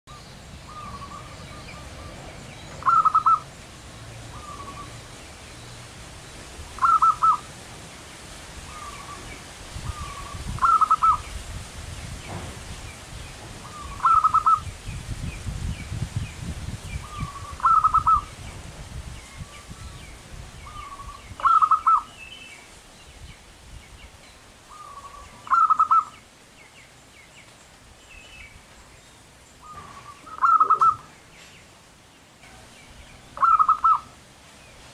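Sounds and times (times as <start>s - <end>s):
dove cooing: 0.7s - 3.5s, 4.3s - 5.0s, 6.8s - 7.5s, 9.9s - 11.2s, 13.6s - 14.6s, 17.0s - 18.3s, 20.7s - 22.1s, 24.7s - 26.1s, 29.6s - 31.1s, 33.4s - 34.2s.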